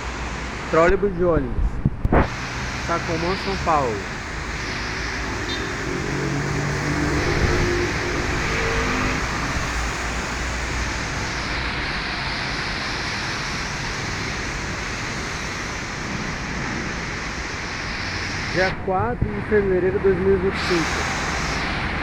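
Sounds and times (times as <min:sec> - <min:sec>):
rain and tyres hissing: 0:00.0 - 0:01.0, 0:01.7 - 0:22.0
vehicle engine hum: 0:01.7 - 0:18.4.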